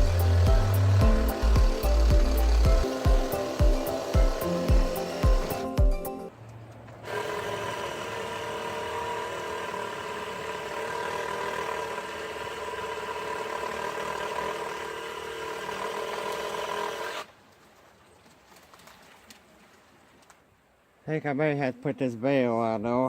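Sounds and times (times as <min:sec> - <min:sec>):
reciprocating saw motor whining: 0:00.0 - 0:06.3, 0:07.0 - 0:17.3.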